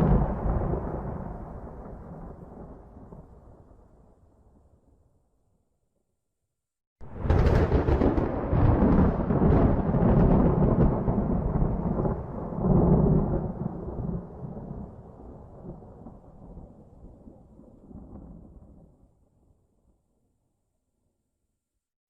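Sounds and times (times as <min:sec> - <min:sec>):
thunder crack and rumble: 0:00.0 - 0:04.0, 0:07.0 - 0:19.0.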